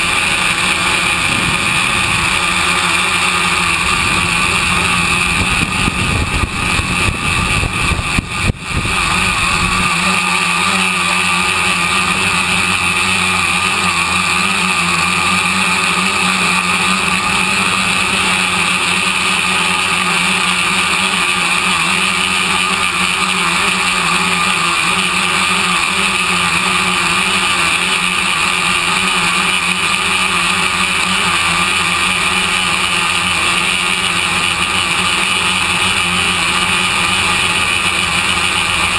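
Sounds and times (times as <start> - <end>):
low gusty rumble: 0.0 - 9.9
drone motors and propellers whining: 0.0 - 38.9.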